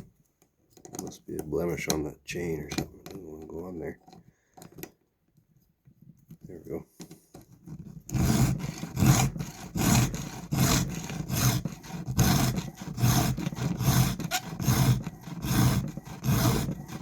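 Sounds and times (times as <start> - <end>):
file rasping on chainsaw chain: 7.7 - 17.0.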